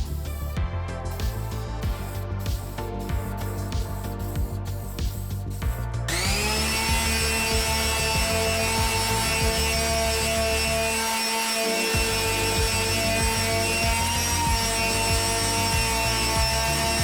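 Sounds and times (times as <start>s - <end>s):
power tool rubbing against wood: 6.1s - 17.0s.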